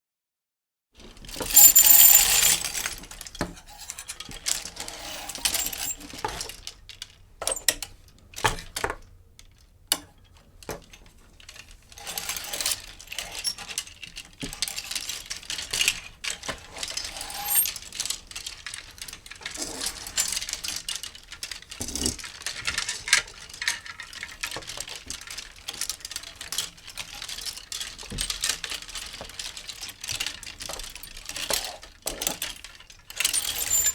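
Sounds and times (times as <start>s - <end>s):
hangers clinking and rattling: 1.2s - 6.6s, 11.4s - 33.9s
hangers scraping along clothes rail: 1.3s - 3.0s, 3.6s - 6.5s, 12.0s - 13.8s, 16.6s - 18.1s, 19.4s - 20.9s, 33.2s - 33.9s.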